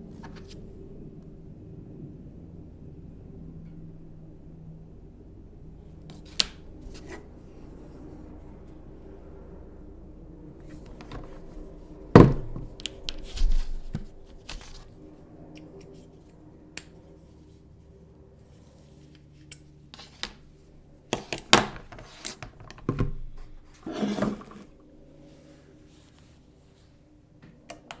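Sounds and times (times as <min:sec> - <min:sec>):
packaging rustling: 0:10.7 - 0:15.0
hands tapping and knocking on box: 0:12.2 - 0:14.1.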